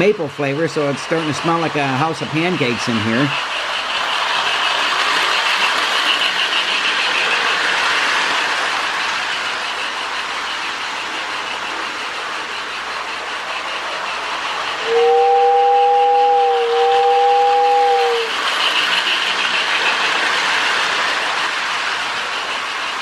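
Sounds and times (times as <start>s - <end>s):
electronic steam chuffing: 0.0s - 23.0s
toy train running on track: 0.0s - 23.0s
two-tone train whistle: 14.8s - 18.4s.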